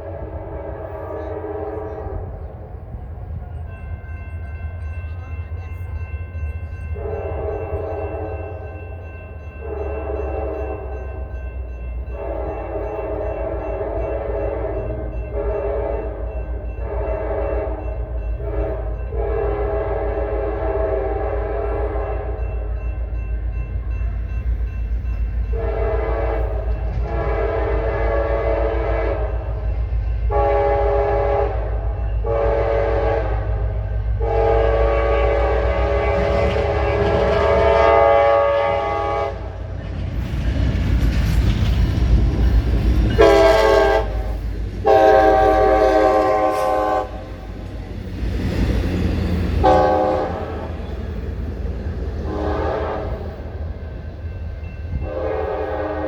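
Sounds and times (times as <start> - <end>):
locomotive air horn blasts: 0.0 - 2.5, 7.0 - 8.6, 12.2 - 16.2, 16.8 - 17.8, 18.4 - 22.4, 25.5 - 29.5, 30.3 - 39.6, 43.1 - 47.5, 49.6 - 50.7, 52.2 - 53.6, 54.9 - 56.0
rail and wheel noise: 0.0 - 56.0
train rumbling: 0.0 - 56.0.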